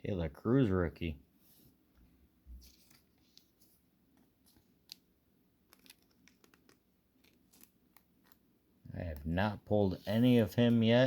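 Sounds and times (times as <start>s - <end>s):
trading cards clicking: 5.7s - 8.4s.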